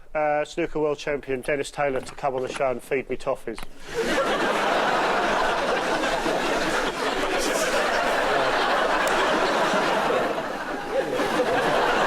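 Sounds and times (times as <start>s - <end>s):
audience laughing: 3.8s - 12.0s.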